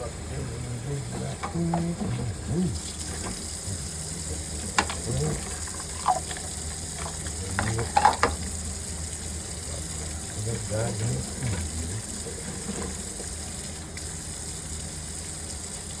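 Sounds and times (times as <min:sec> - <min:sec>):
steady low hum: 0:00.0 - 0:16.0
tap water running into sink: 0:00.9 - 0:16.0
dishes clinking: 0:05.9 - 0:08.4.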